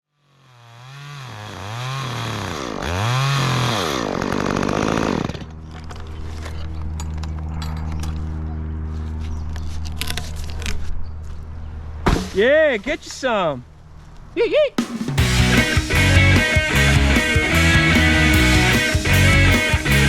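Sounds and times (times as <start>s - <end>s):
chainsaw engine revving and idling: 0.1s - 5.6s, 14.9s - 20.0s.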